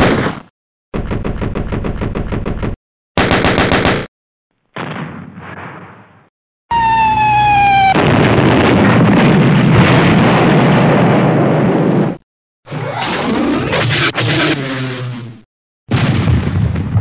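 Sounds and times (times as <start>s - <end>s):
falling bomb whistle: 6.7s - 8.1s
loud rumbling explosion: 7.5s - 12.2s, 15.9s - 17.0s.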